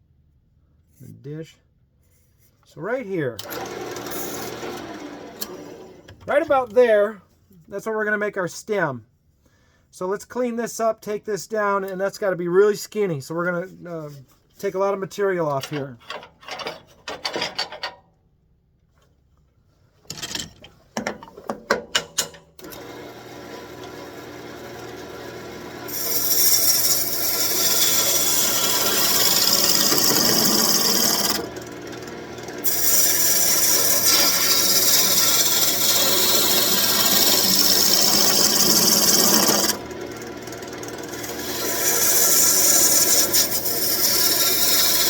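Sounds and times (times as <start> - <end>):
wood lathe gouge cutting hiss: 22.6 - 45.0.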